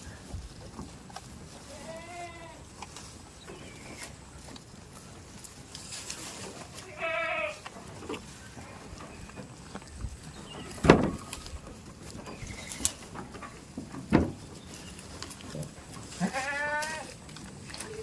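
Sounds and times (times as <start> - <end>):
goat bleating: 1.6 - 2.7, 6.7 - 7.7, 15.6 - 17.2
loud thumps: 10.7 - 11.3.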